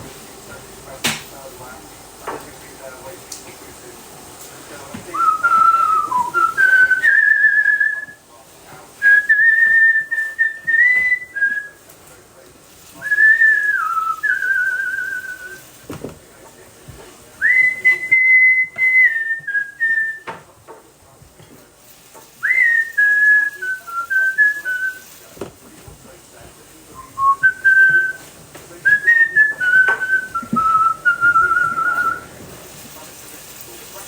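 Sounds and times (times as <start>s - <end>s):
person whistling a tune: 5.1s - 8.2s, 9.0s - 11.8s, 13.0s - 15.6s, 17.4s - 20.4s, 22.4s - 25.0s, 27.0s - 28.2s, 28.8s - 32.2s.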